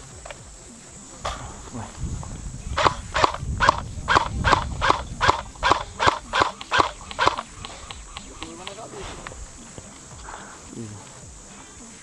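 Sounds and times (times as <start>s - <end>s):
low rumble of movement: 0.0s - 6.3s
running footsteps: 0.0s - 12.0s.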